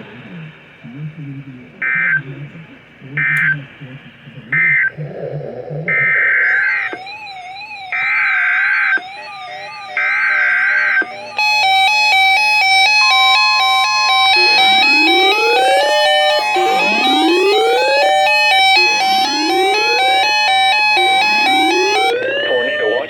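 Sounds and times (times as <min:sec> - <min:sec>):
warbling siren-like tone: 0:04.5 - 0:23.0
screeching digital data bursts: 0:05.9 - 0:23.0
synthesized electronic music: 0:05.9 - 0:23.0.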